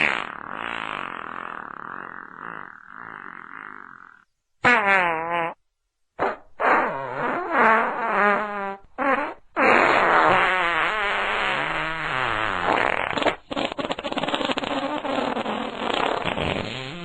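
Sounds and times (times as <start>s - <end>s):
fart sounds: 0.0s - 5.6s, 6.2s - 17.0s.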